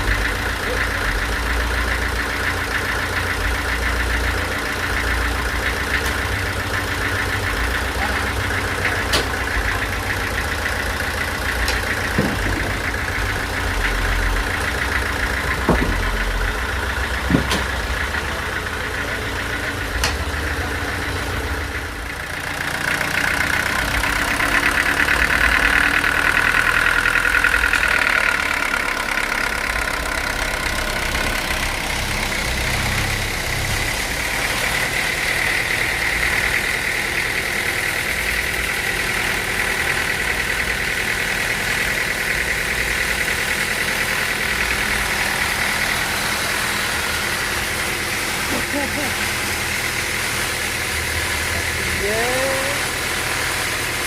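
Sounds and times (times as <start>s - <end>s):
sawmill engine hum: 0.0s - 54.0s
sawmill whine: 0.0s - 54.0s
sharp knocks: 11.7s - 13.0s, 15.6s - 16.2s, 17.2s - 17.8s.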